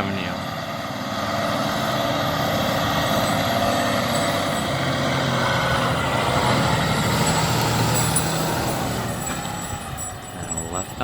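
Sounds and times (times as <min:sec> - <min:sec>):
fire truck engine running: 0:00.0 - 0:11.0.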